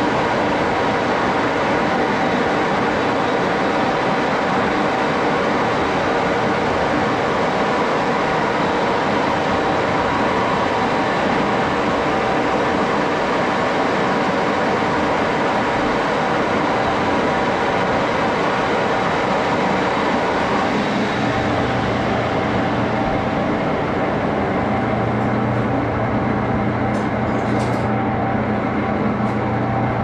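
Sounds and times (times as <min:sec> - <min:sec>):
metal lathe humming: 0:20.2 - 0:30.0.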